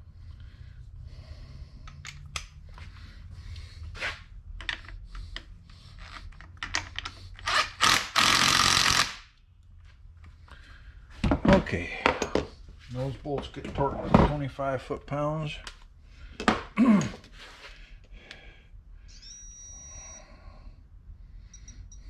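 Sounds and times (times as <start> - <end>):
impact wrench running: 7.4 - 9.3.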